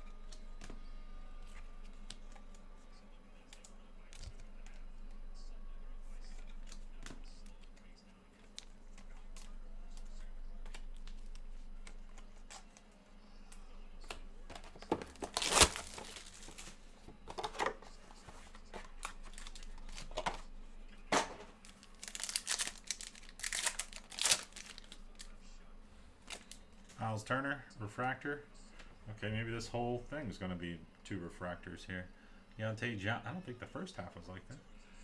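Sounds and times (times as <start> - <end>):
wrappers ripping and rustling: 14.6 - 17.0, 18.0 - 20.5, 21.4 - 25.4, 26.2 - 26.6.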